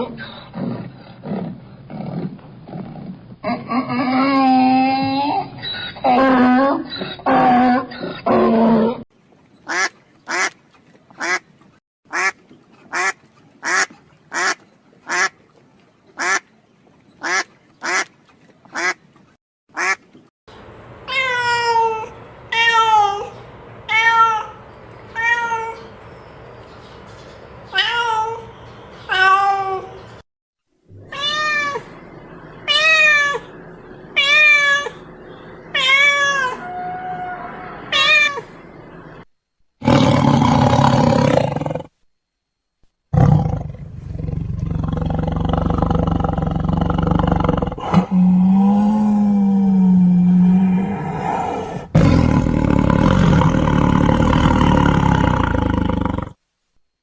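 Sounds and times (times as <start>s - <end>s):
cat meowing: 31.0s - 31.9s, 32.7s - 33.5s, 34.2s - 35.0s, 35.7s - 38.5s.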